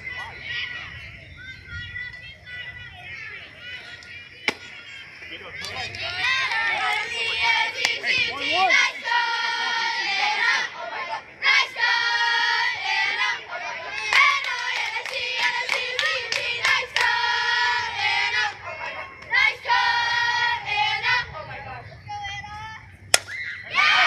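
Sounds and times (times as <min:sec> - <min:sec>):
girls chanting in unison: 0:05.7 - 0:21.8, 0:23.6 - 0:24.0.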